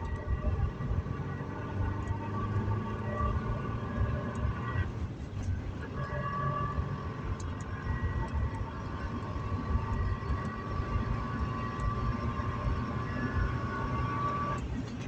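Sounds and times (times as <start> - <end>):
car engine and road rumble: 0.0 - 15.0
ticking sputtering engine note: 0.0 - 15.0.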